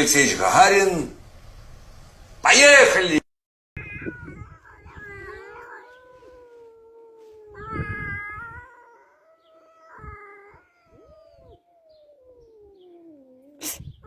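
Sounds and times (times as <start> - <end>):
cat yowling: 3.8 - 14.0.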